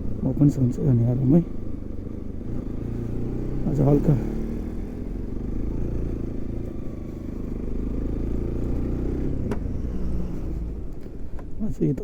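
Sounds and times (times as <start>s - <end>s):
motorcycle engine running: 0.0s - 11.4s.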